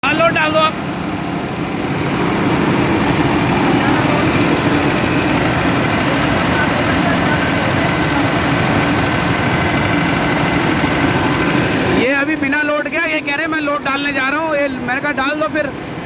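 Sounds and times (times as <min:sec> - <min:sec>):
engine idling: 0:00.0 - 0:16.0
rapid tappet ticking: 0:00.0 - 0:16.0.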